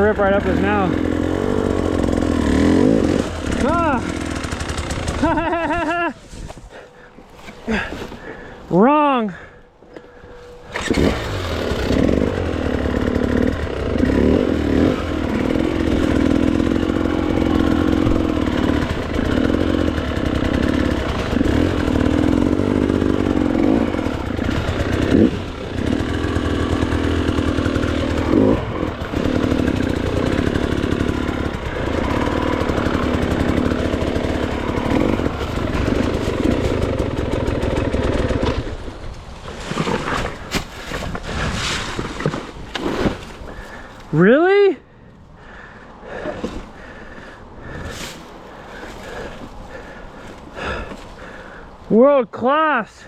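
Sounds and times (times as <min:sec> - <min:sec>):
dirt bike engine revving: 0:00.0 - 0:06.2, 0:10.6 - 0:39.0.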